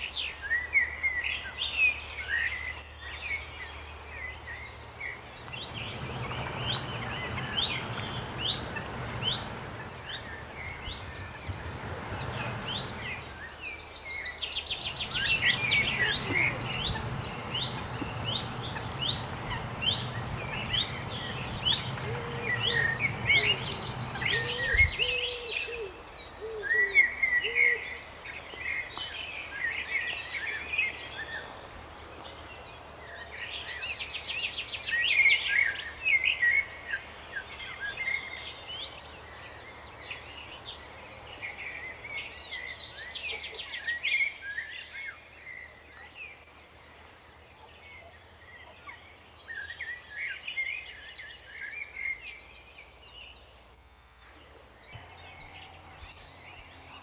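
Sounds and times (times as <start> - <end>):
birds chirping: 3.2 - 43.4
low bird calls: 4.8 - 13.6, 14.6 - 42.7
steady low rumble: 5.2 - 13.4, 14.8 - 25.2
bird trill: 5.3 - 13.4, 14.8 - 27.2.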